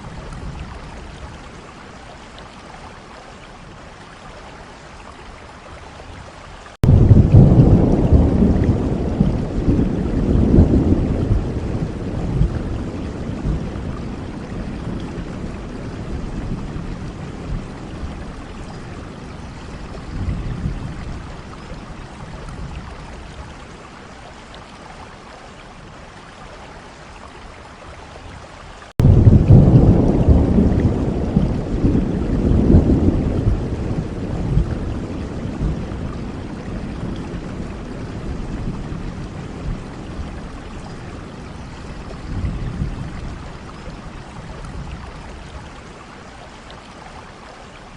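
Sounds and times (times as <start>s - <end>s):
steady rain: 0.0s - 47.9s
rolling thunder: 6.8s - 23.0s, 29.0s - 45.2s.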